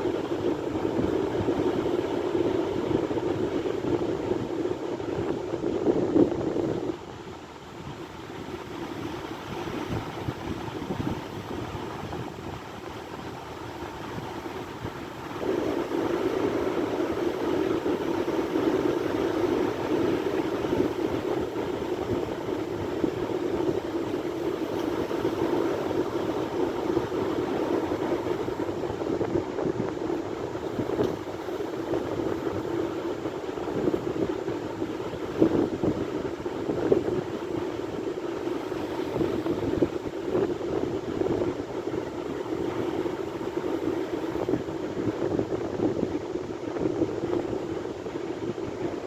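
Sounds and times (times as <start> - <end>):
sea surf rushing: 0.0 - 49.0.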